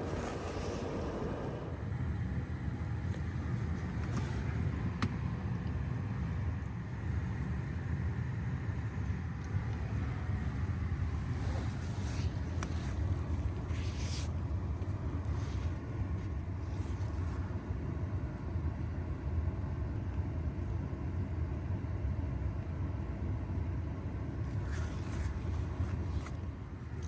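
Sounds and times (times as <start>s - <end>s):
car cabin rumble: 0.0s - 2.0s.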